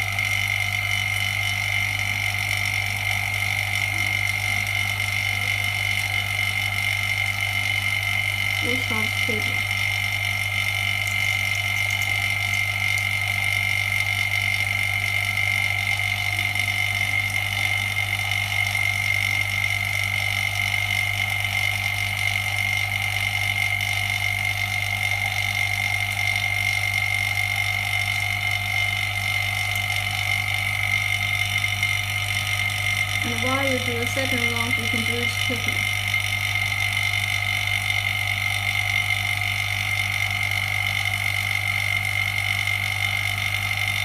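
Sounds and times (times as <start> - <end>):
machine humming with high whine: 0.0 - 44.0.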